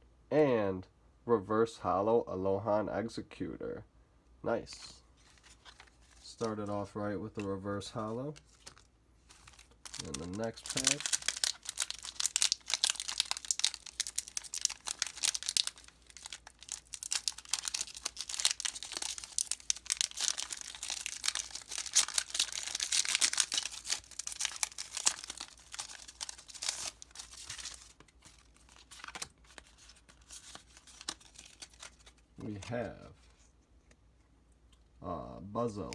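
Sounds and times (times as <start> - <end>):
foil wrapper crinkling and tearing: 8.4 - 32.9.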